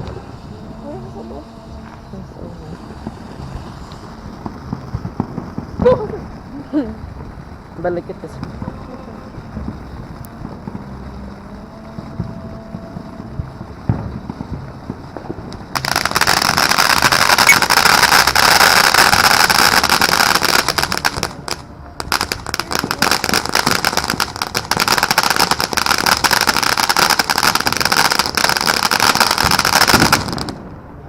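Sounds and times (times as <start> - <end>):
firework fountain hissing and crackling: 0.0 - 31.0.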